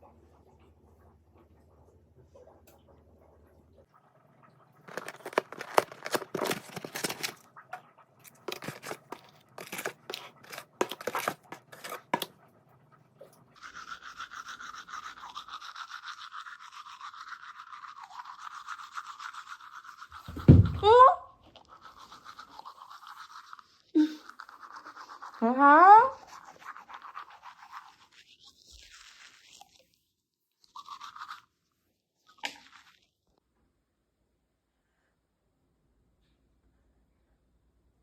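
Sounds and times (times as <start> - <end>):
loud thump: 20.3 - 20.8.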